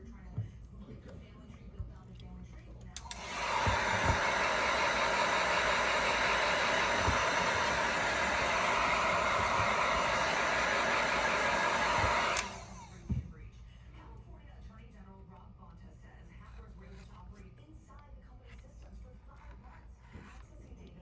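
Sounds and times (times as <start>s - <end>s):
electric air blower rushing: 3.0s - 13.1s.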